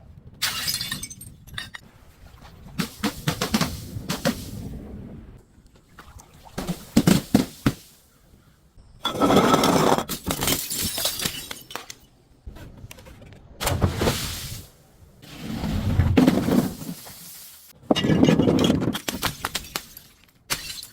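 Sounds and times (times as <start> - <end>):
glass shattering: 0.4 - 1.8, 10.1 - 11.9, 19.5 - 20.9.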